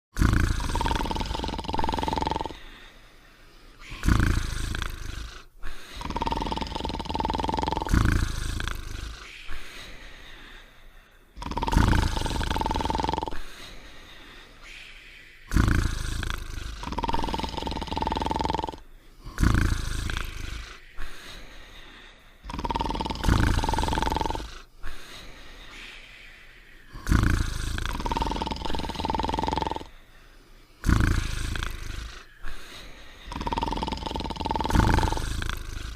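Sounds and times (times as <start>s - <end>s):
cartoon dogs snoring: 0.1s - 10.7s, 11.3s - 35.9s
high snore whistle: 3.7s - 10.0s, 22.5s - 24.7s, 25.6s - 29.9s, 30.8s - 35.9s.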